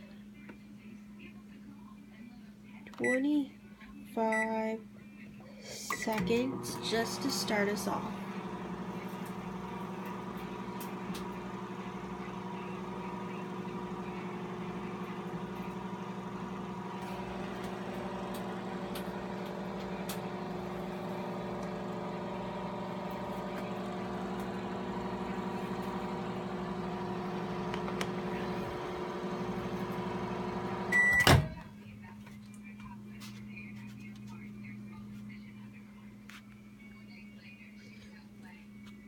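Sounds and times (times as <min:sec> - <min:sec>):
microwave oven humming: 0:05.9 - 0:33.0.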